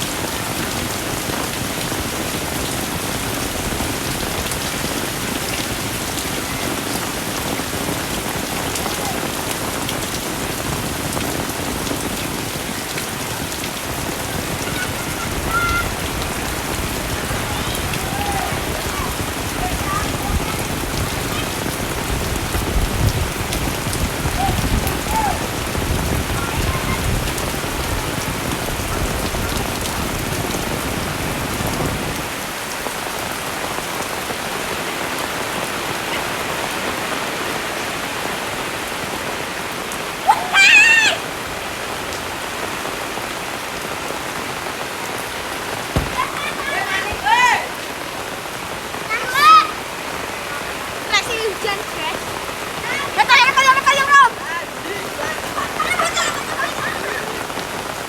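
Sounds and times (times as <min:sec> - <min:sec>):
heavy rain falling: 0:00.0 - 0:58.0
low bumps: 0:45.8 - 0:47.4.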